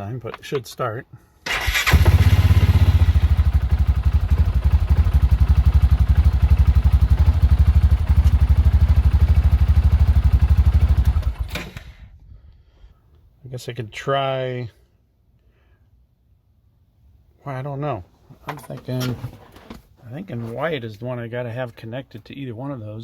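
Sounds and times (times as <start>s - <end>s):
engine starting and idling: 1.4s - 12.2s.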